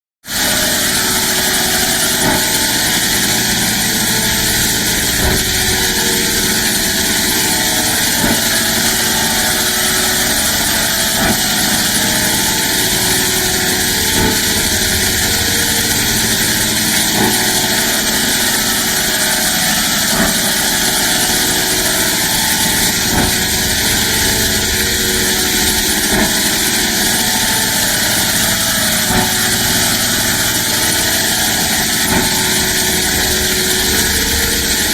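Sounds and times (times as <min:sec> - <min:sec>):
engine-like electronic drone: 0:00.3 - 0:34.9.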